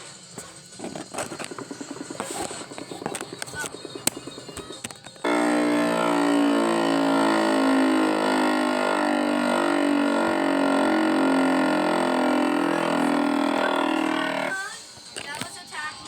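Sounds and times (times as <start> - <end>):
loud siren wavering tone: 5.2 - 14.6.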